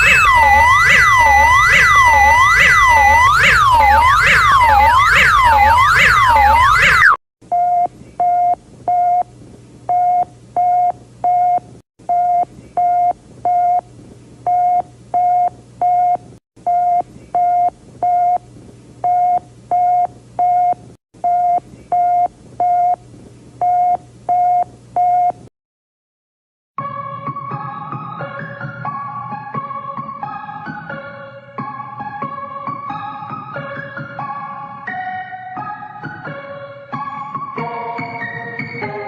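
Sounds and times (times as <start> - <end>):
sweeping siren wail: 0.0 - 7.2.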